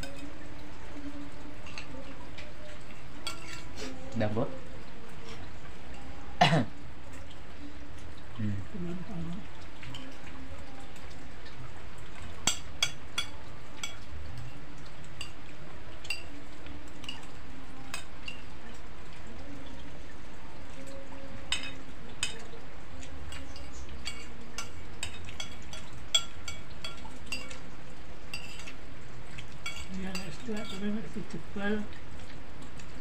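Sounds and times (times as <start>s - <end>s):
spoons clinking on plates: 3.2s - 3.7s, 12.3s - 14.6s, 15.2s - 15.4s, 16.0s - 16.4s, 17.0s - 18.5s, 21.5s - 22.6s, 23.3s - 27.6s, 28.3s - 28.8s, 29.4s - 31.1s.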